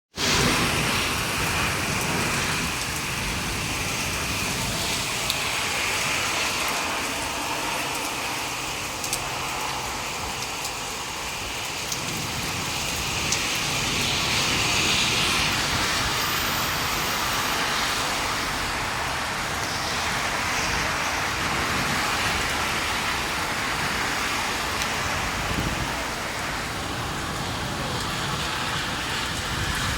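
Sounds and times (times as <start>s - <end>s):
steady rain falling: 0.2s - 29.9s.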